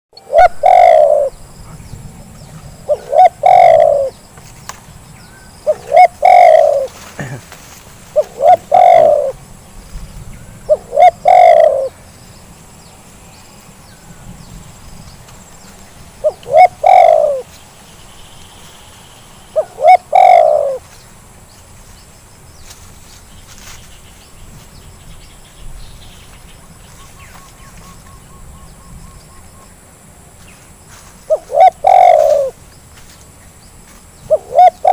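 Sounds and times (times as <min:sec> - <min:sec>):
dove cooing: 0:00.2 - 0:01.8, 0:02.8 - 0:04.2, 0:05.6 - 0:09.4, 0:10.6 - 0:12.0, 0:16.2 - 0:17.5, 0:19.5 - 0:20.9, 0:31.3 - 0:32.6, 0:34.2 - 0:34.9.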